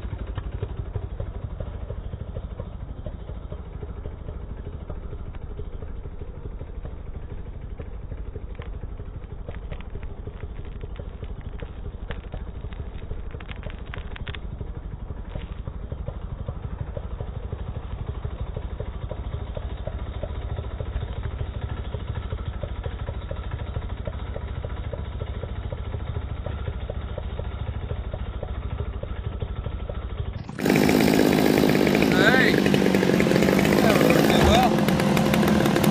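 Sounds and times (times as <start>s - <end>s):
chainsaw running: 0.0s - 35.9s
slowed chainsaw drone: 0.0s - 35.9s.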